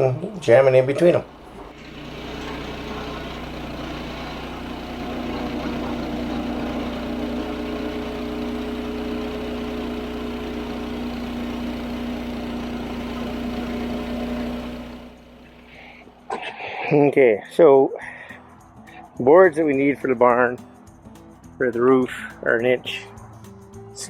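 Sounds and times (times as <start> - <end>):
bandsaw sawmill engine running: 0.0 - 16.8.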